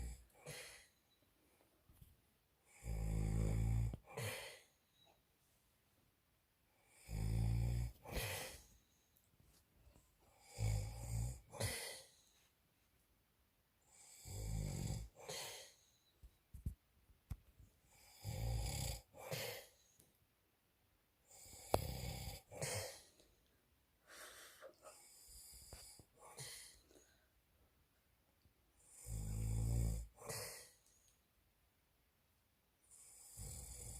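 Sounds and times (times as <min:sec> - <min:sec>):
man snoring loudly: 0:02.7 - 0:04.6, 0:06.8 - 0:08.6, 0:10.4 - 0:12.0, 0:13.9 - 0:15.7, 0:17.9 - 0:19.7, 0:21.3 - 0:23.1, 0:28.8 - 0:30.8, 0:33.0 - 0:33.9.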